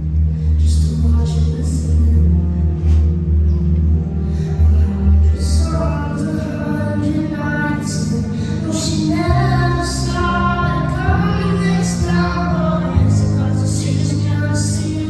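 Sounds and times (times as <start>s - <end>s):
woman singing: 4.6s - 15.0s.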